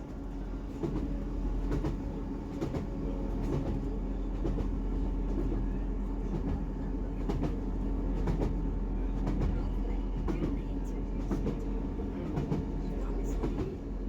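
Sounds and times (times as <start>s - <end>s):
train engine drone: 0.0s - 14.0s.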